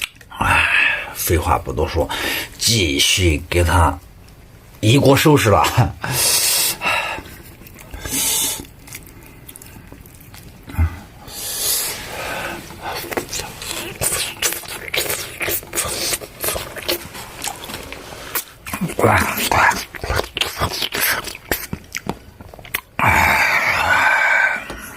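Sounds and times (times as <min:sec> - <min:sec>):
chewing: 0:07.1 - 0:23.0.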